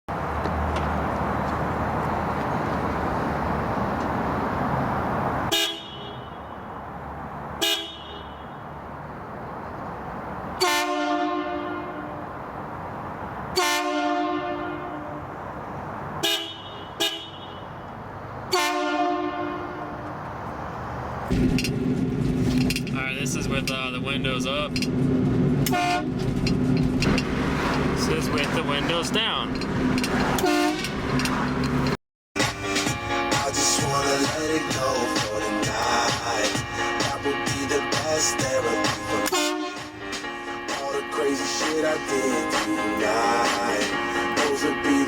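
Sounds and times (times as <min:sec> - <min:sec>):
road or wind noise: 0:00.1 - 0:45.0
car air horn blasts: 0:05.5 - 0:06.6, 0:07.6 - 0:08.6, 0:10.6 - 0:12.2, 0:13.5 - 0:15.2, 0:16.2 - 0:17.7, 0:18.5 - 0:20.0, 0:25.7 - 0:26.2, 0:30.4 - 0:31.0, 0:38.7 - 0:40.1.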